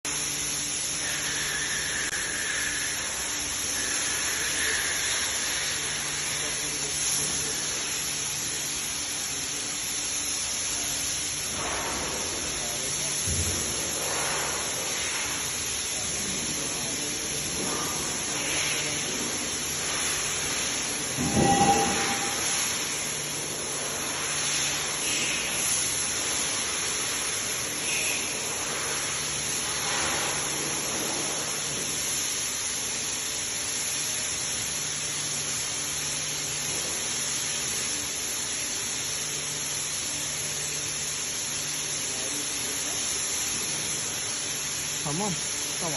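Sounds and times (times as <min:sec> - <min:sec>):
short whine: 0:21.2 - 0:23.0.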